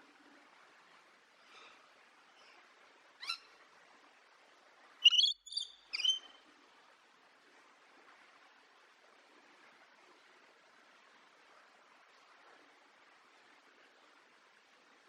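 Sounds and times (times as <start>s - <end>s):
faint steady hiss: 0.0s - 15.0s
parrot chirping: 5.0s - 6.4s.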